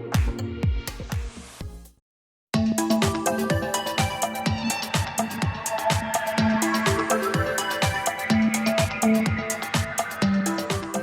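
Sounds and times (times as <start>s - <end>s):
kick drum beat: 0.2s - 1.3s
held synth notes: 2.6s - 11.0s
hi-hat ticks: 2.8s - 11.0s.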